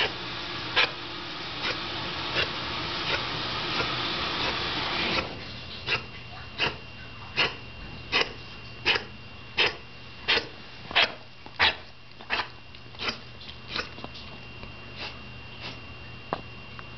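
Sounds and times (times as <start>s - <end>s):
dog coughing: 0.0s - 1.0s, 1.6s - 6.8s, 7.4s - 14.1s.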